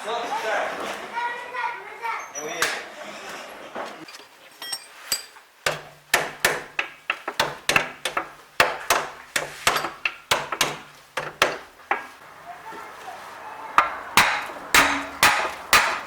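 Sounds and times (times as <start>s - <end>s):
hammer blows: 5.1s - 16.0s.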